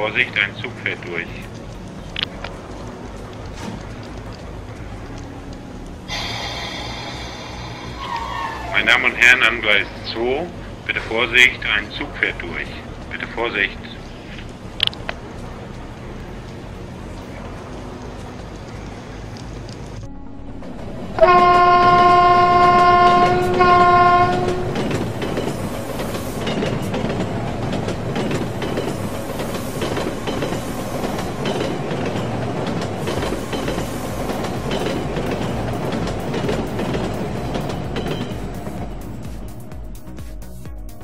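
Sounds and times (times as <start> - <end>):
train rumbling and clattering past: 0.0 - 41.0
train horn blasts: 21.2 - 25.1.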